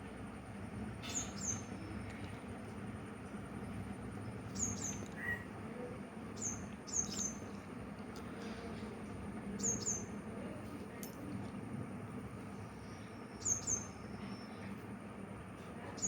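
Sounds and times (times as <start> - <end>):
small bird chirping: 4.5 - 5.5, 6.4 - 7.4, 9.6 - 10.1, 12.8 - 14.6.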